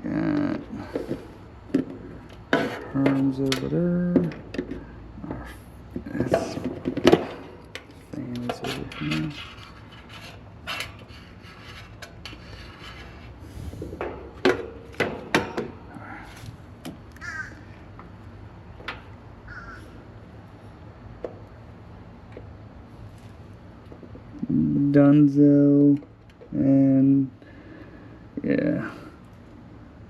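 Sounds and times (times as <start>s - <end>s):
hand tools clicking and scraping: 0.3s - 16.6s.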